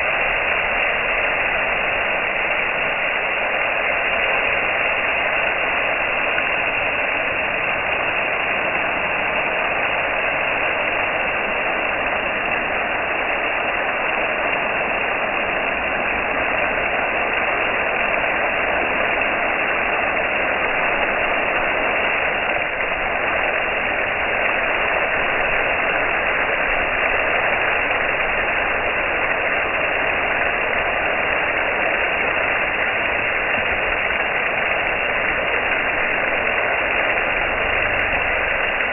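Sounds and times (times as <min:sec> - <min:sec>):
water spraying from garden hose: 0:00.0 - 0:38.9.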